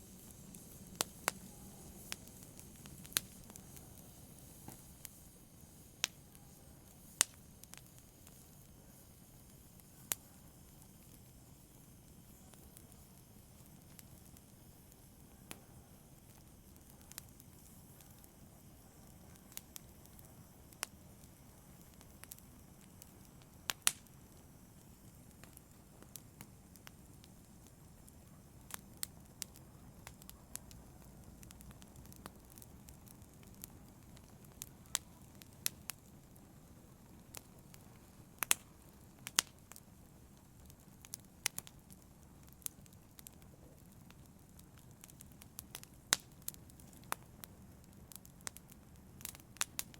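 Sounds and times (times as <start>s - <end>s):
wood fire crackling: 0.0s - 49.9s
sharp pops and snaps: 22.0s - 24.1s, 38.4s - 39.8s.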